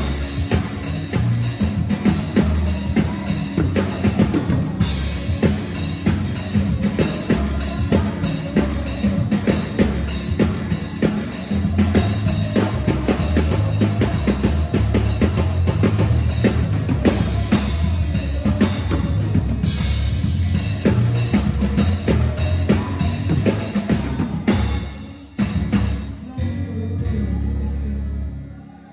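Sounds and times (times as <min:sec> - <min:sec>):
fast drum kit strokes: 0:00.0 - 0:26.2
steady bass line: 0:00.0 - 0:28.6.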